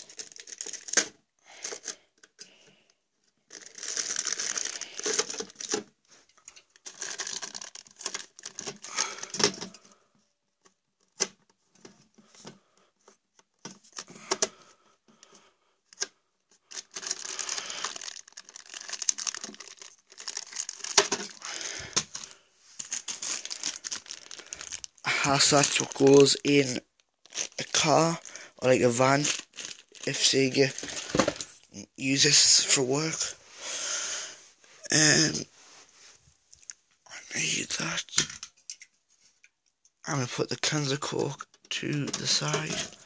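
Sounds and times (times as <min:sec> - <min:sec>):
plastic packaging crinkling: 0:00.0 - 0:01.9, 0:03.5 - 0:09.8, 0:16.7 - 0:31.6, 0:41.9 - 0:43.0.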